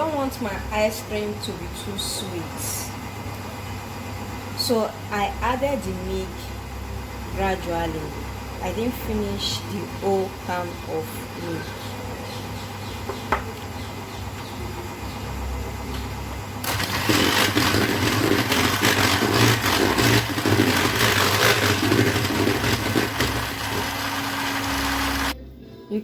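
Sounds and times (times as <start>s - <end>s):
electric mixer running: 16.6s - 25.4s.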